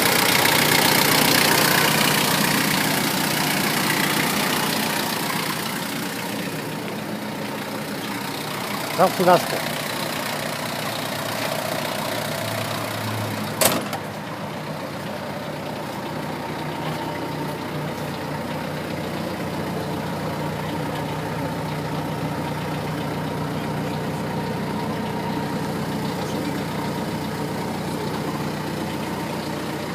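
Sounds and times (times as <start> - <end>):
forklift engine idling: 0.0 - 29.9.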